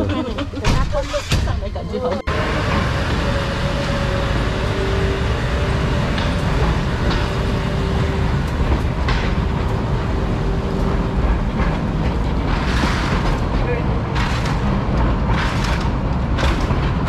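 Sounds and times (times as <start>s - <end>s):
train wheels rumbling on track: 0.0s - 17.0s.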